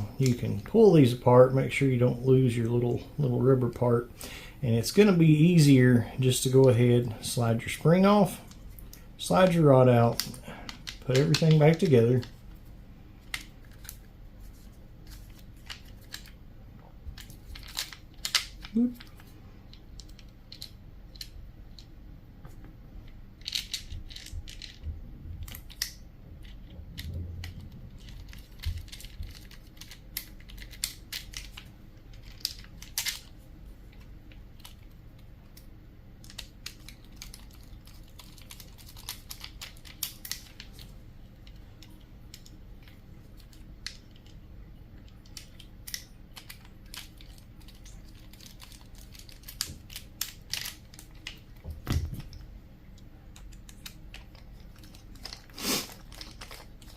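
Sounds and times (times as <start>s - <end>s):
small parts clicking and tapping: 8.4s - 12.4s, 13.2s - 14.1s, 17.0s - 44.4s, 45.0s - 56.9s.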